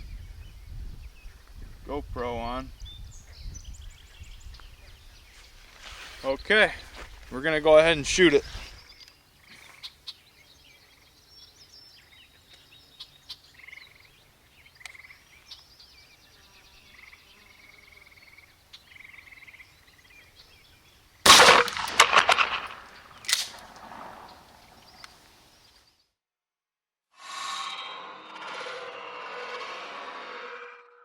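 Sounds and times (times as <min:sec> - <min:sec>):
birds chirping: 0:00.0 - 0:26.0
sharp cracks: 0:21.2 - 0:25.3
shotgun blast: 0:21.3 - 0:24.5.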